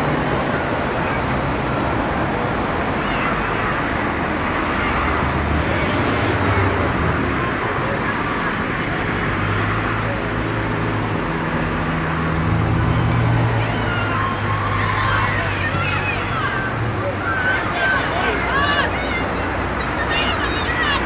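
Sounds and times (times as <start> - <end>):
faint voices: 0.0 - 21.0
outdoor noise: 0.0 - 21.0.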